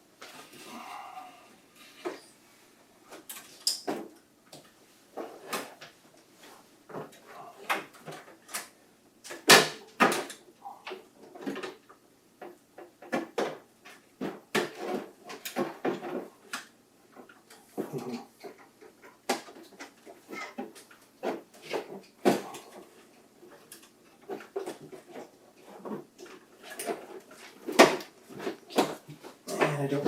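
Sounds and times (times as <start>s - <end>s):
plastic parts clicking and scraping: 7.0s - 29.8s.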